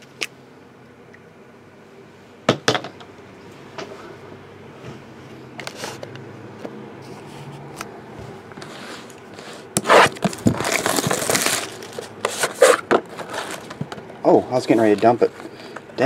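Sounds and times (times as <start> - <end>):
packaging crinkling and tearing: 9.8 - 13.8.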